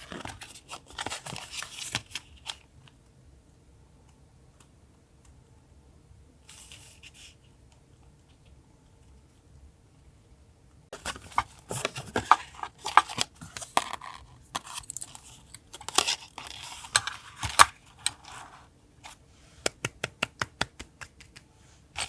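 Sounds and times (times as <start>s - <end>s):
paper rustling and crinkling: 0.0s - 2.6s, 11.0s - 19.2s.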